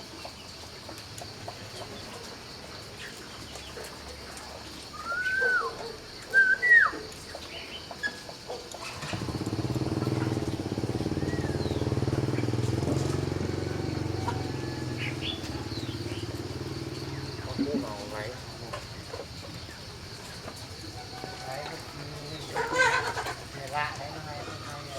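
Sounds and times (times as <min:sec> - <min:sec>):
bird whistling slurred notes: 0:05.0 - 0:06.9
motorbike engine humming: 0:08.8 - 0:18.6.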